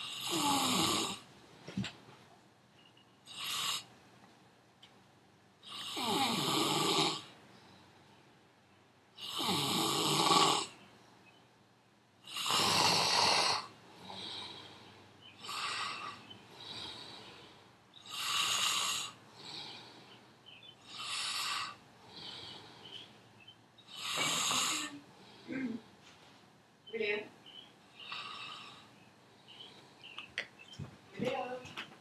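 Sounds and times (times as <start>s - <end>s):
man snoring loudly: 0.0s - 1.2s, 3.3s - 3.9s, 5.6s - 7.3s, 9.2s - 10.7s, 12.3s - 14.6s, 18.0s - 19.7s, 20.9s - 22.3s, 23.9s - 24.9s
quieter snoring breaths: 0.0s - 1.3s, 5.6s - 8.0s, 9.2s - 10.8s, 12.2s - 25.8s, 27.9s - 30.2s.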